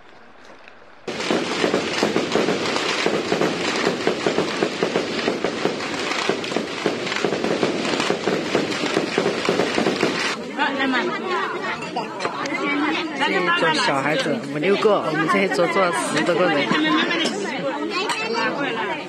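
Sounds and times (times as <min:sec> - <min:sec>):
firecrackers crackling: 0:00.0 - 0:10.4.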